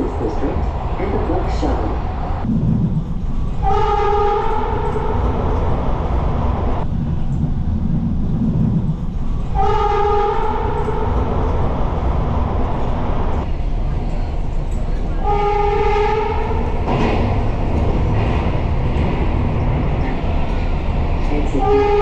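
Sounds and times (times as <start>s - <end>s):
train rumbling on track: 0.0s - 22.0s
train horn blasts: 3.6s - 5.2s, 9.6s - 11.1s, 15.2s - 16.7s, 21.5s - 22.0s.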